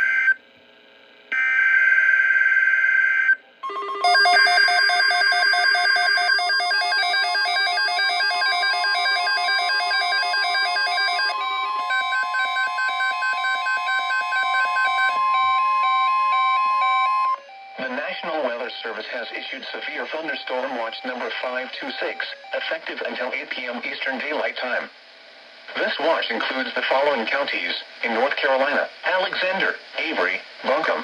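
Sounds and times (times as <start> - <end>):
rapidly pulsing alert tones: 3.6 - 17.4
steady electronic tone: 3.6 - 17.5.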